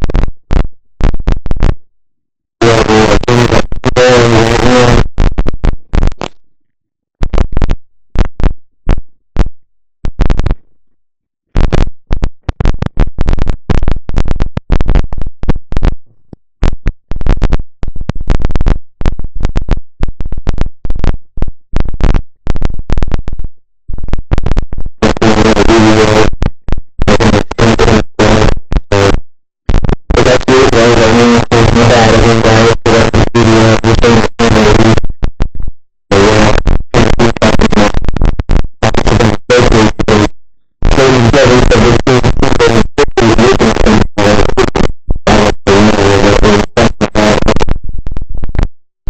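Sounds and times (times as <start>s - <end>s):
crackling microphone static: 0.0s - 49.0s.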